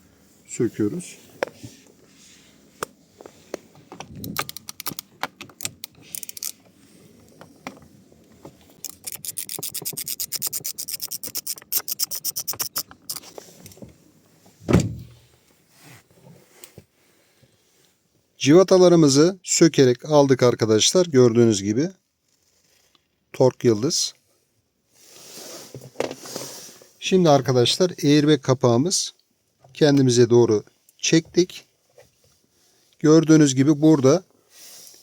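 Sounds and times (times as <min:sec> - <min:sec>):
ratchet clicking: 0:04.4 - 0:06.6, 0:08.8 - 0:13.2
low thump: 0:14.6 - 0:15.2.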